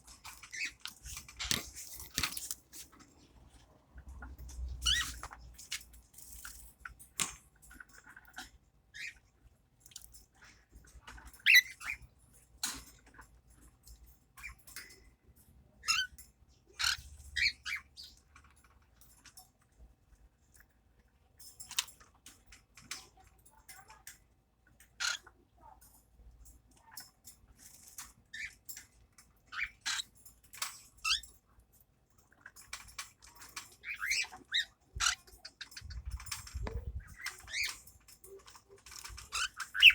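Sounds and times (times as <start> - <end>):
baby parrots squeaky chirps: 4.7 - 5.2, 11.4 - 12.0, 15.8 - 16.1, 16.8 - 18.2, 29.5 - 30.1, 33.8 - 35.9, 37.0 - 37.8, 39.1 - 39.9.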